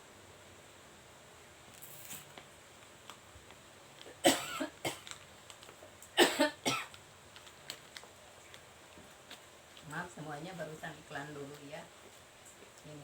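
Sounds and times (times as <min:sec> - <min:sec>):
person coughing: 0:04.2 - 0:05.0, 0:06.2 - 0:06.9.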